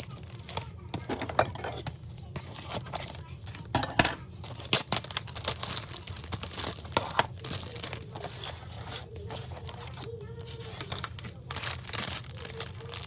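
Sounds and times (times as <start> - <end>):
plastic packaging crinkling and tearing: 0.0 - 13.0.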